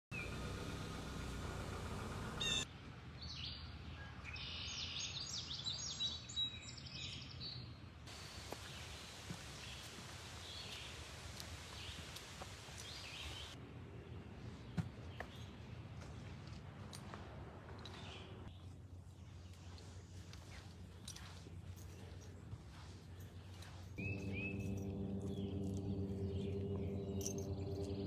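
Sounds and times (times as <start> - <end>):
birds singing and chirping: 0.1 - 2.7, 17.8 - 28.0
steady low hum: 18.6 - 28.0.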